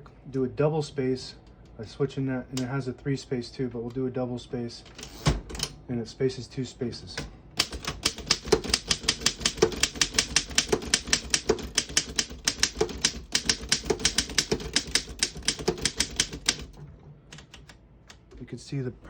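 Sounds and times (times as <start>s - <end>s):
manual typewriter typing: 7.6s - 17.8s.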